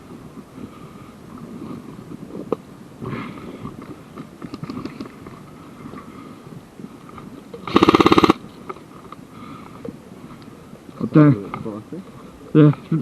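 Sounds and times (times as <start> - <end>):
airsoft gun full-auto burst: 7.6 - 8.4.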